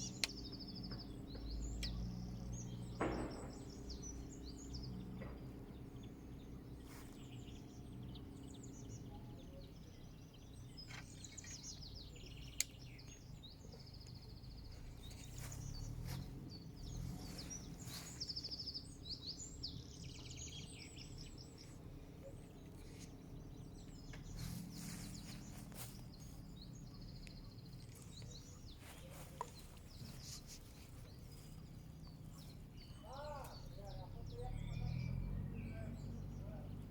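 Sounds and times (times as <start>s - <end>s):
low background rumble: 0.0s - 36.9s
small birds chirping and trilling: 0.0s - 36.9s.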